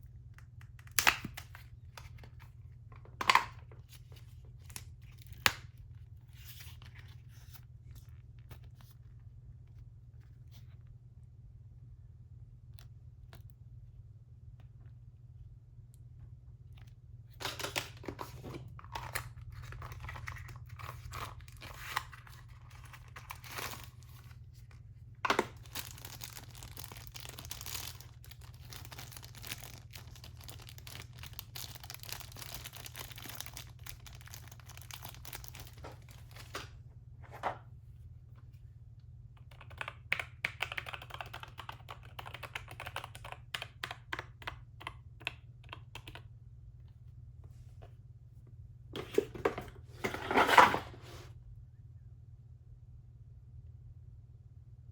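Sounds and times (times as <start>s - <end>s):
steady low hum: 0.0s - 40.4s
packaging crinkling and tearing: 17.4s - 24.4s, 25.3s - 36.7s.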